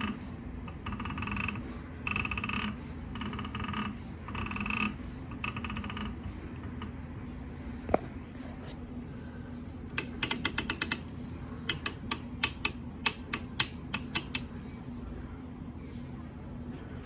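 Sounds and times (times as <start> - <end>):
steady low hum: 0.0 - 17.0
film counter clicking: 9.9 - 11.1, 11.7 - 14.5.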